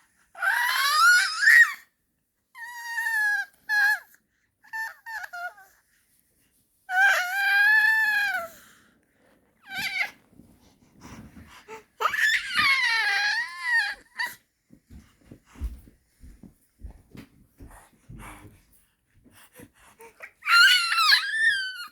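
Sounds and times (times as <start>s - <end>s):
soft breathy sounds: 8.2s - 12.2s, 14.1s - 20.7s
baby squealing: 20.4s - 21.9s.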